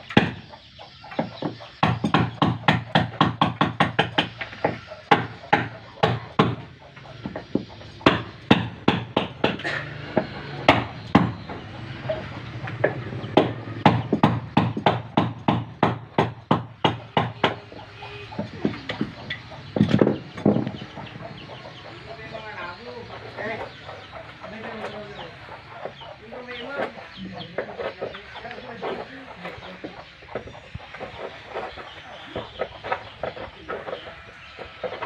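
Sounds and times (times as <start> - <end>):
hammer blows on timber: 1.2 - 21.6.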